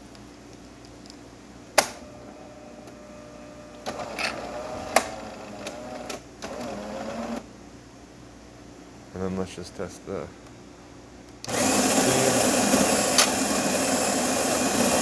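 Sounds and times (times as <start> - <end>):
espresso machine humming: 2.0 - 7.5, 11.5 - 15.0.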